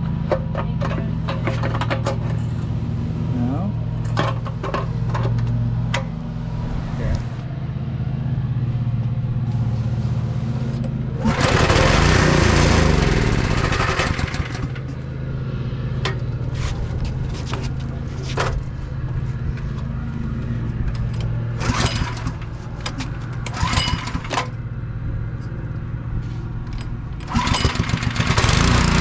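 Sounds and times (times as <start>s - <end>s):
small engine running: 9.5s - 16.9s, 21.5s - 22.6s, 23.4s - 24.6s, 27.2s - 29.0s.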